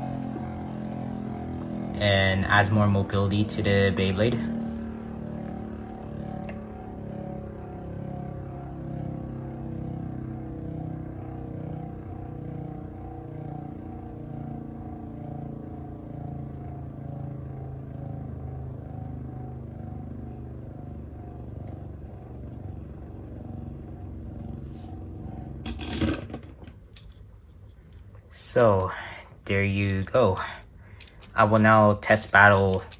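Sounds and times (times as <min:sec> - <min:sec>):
spinning top whirring: 0:23.3 - 0:27.7.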